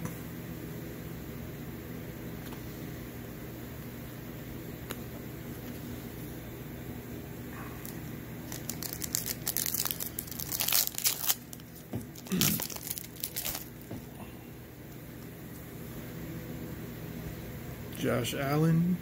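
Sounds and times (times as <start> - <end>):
plastic wrapper tearing and crinkling: 7.8 - 13.9.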